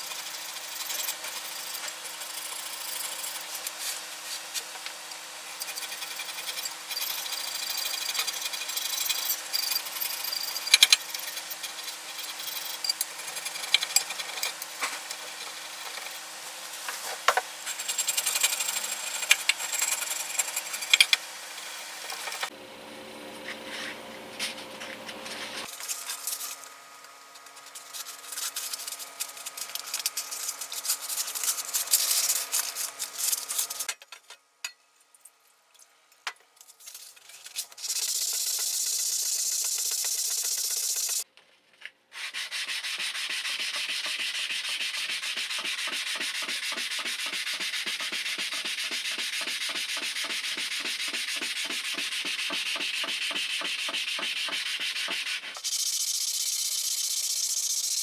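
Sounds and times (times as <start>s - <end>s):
scraping and rubbing: 5.4s - 22.5s, 23.4s - 26.7s, 27.4s - 33.9s
steady hum: 17.8s - 26.4s.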